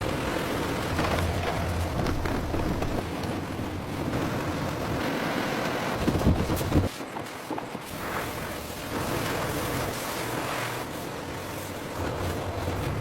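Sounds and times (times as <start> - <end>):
industrial machinery rumbling: 0.0 - 5.4
low hum: 0.0 - 6.8.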